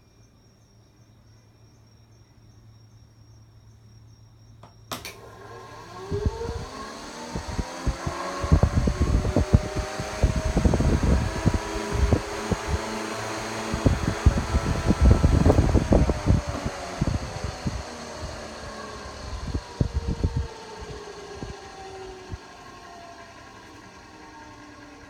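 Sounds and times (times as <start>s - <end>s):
fan switch click: 4.6s - 5.3s
electric fan motor whine: 4.6s - 25.0s
wind buffeting microphone: 6.0s - 22.4s.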